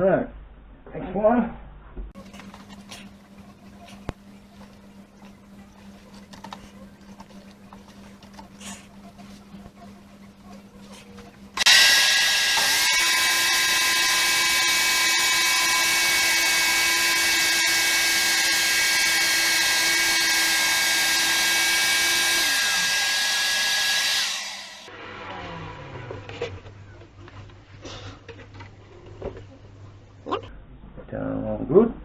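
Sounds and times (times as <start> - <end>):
electric power tool whining: 11.6 - 26.2.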